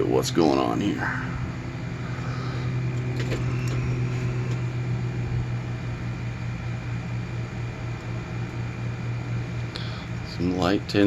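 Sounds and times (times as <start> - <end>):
low machine hum: 0.0 - 11.0.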